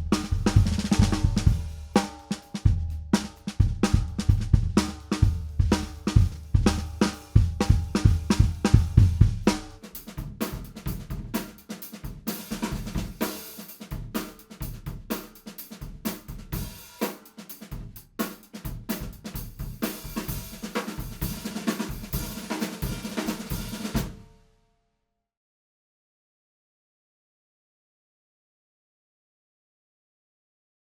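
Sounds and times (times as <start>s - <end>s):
bass drum: 0.0s - 11.4s
snare drum: 0.0s - 24.3s.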